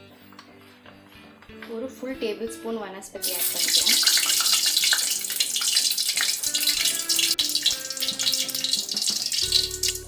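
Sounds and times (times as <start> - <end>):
soft background music: 0.0 - 10.0
oil sizzling in a pan: 3.2 - 10.0.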